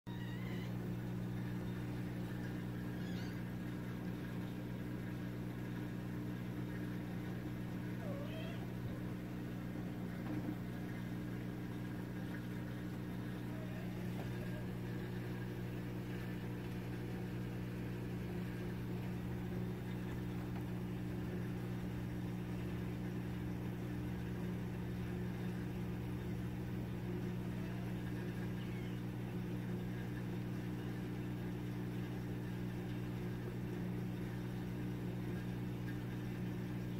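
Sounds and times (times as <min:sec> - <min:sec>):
electrical hum: 0:00.1 - 0:36.9
kitten mewing: 0:08.0 - 0:08.8.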